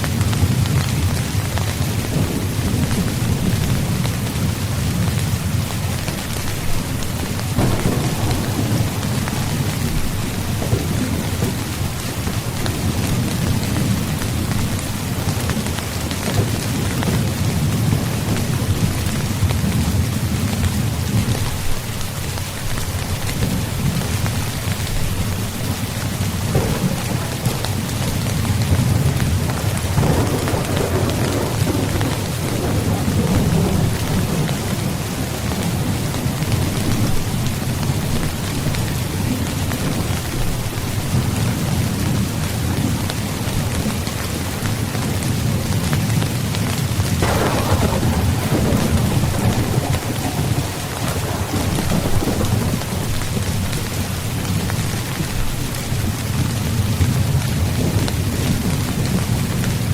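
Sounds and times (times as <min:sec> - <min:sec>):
low rumble of thunder: 0:00.0 - 0:21.9, 0:23.2 - 0:59.9
heavy rain: 0:00.0 - 0:59.9
loud peal of thunder: 0:07.2 - 0:20.2, 0:26.3 - 0:38.4, 0:47.0 - 0:53.8.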